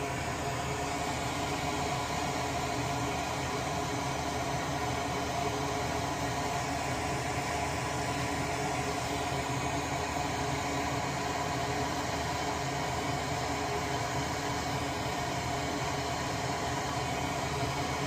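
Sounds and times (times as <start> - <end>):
small fan whirring: 0.0 - 18.0.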